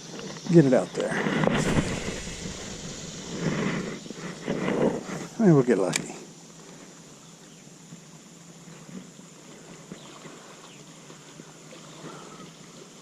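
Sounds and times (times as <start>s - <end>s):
low steady hum: 1.5s - 6.4s.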